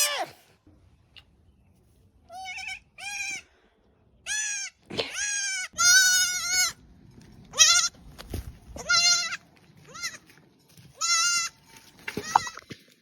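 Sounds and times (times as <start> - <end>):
baby goat bleating: 2.3 - 3.4, 4.2 - 6.8, 7.5 - 8.0, 8.8 - 10.2, 11.0 - 12.7.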